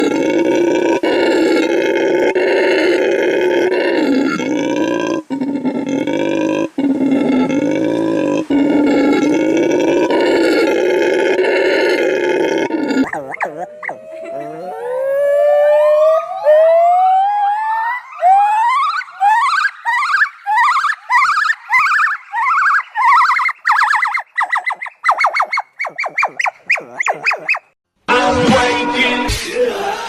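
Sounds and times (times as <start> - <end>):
howler monkeys roaring: 0.0 - 27.8
monkey call with pitch glides: 13.0 - 27.8.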